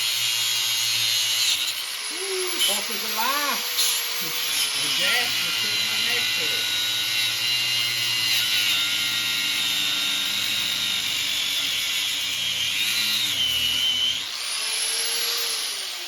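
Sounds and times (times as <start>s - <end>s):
angle grinder cutting steel: 0.0s - 16.0s.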